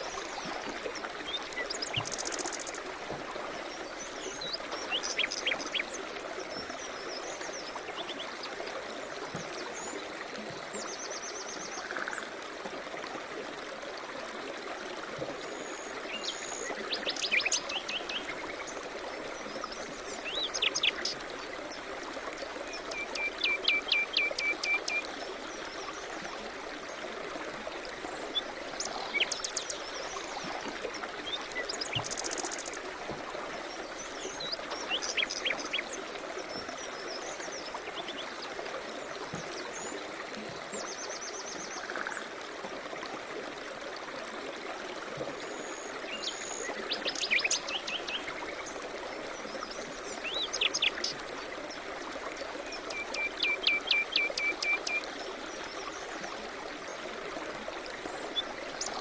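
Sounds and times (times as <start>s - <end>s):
stream flowing: 0.0s - 59.0s.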